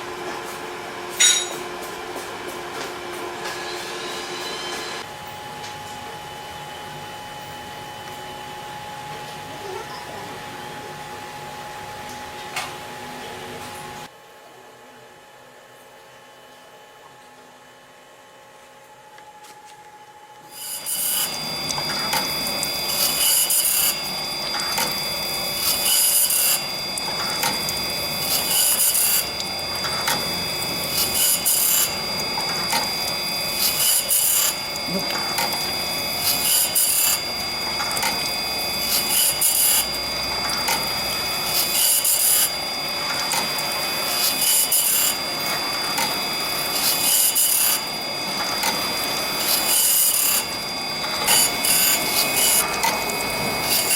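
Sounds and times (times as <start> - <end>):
saw machine whine: 2.4 - 12.0, 20.4 - 53.9.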